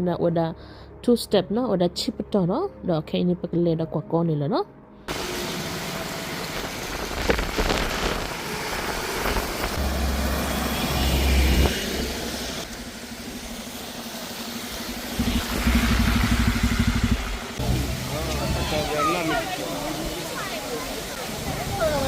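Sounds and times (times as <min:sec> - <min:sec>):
car engine: 0:05.1 - 0:20.3
road noise: 0:05.1 - 0:22.0.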